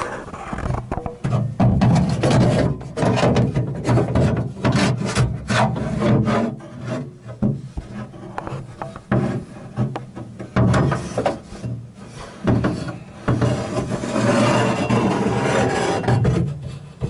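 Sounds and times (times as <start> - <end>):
rough rubbing and scraping: 0.0 - 17.0.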